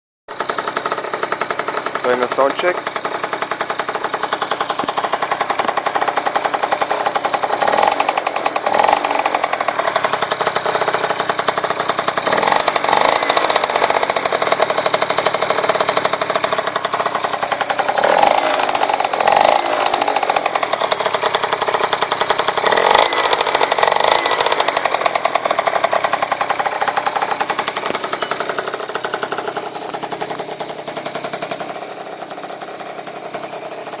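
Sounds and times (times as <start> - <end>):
rattling engine revving: 0.3 - 34.0.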